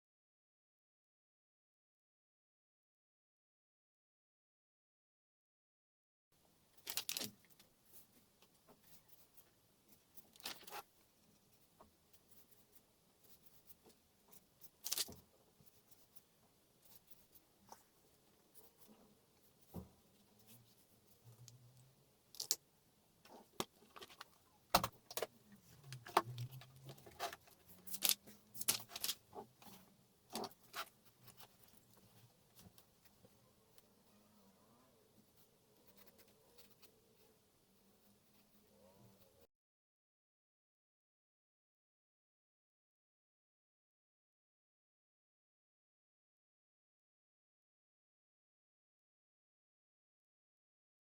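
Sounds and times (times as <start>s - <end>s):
small hard objects clicking: 22.3s - 22.6s.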